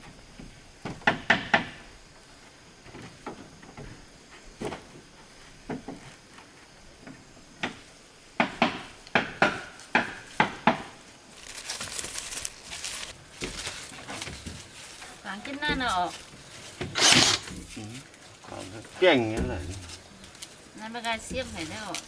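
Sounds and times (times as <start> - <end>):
sharp knocks and clatters: 0.4 - 1.9
rustling: 9.8 - 22.0.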